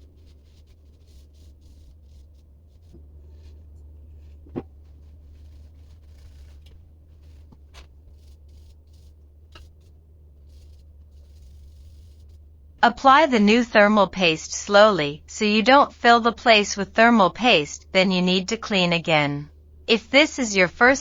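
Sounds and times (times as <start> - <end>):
rubbing and scratching on heatsink: 0.0 - 14.8
steady low hum: 0.0 - 21.0.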